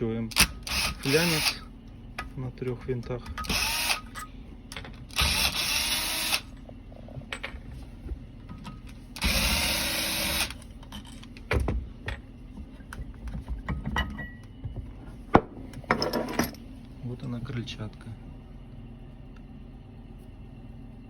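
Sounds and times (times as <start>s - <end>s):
cordless screwdriver running: 0.4s - 1.6s, 3.4s - 4.0s, 5.1s - 6.5s, 9.2s - 10.6s.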